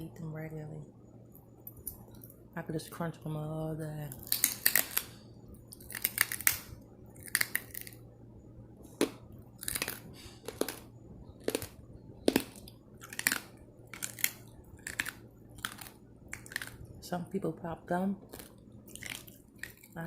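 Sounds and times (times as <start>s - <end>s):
crunchy snack being chewed: 4.2s - 8.0s, 8.9s - 16.9s, 18.2s - 20.0s.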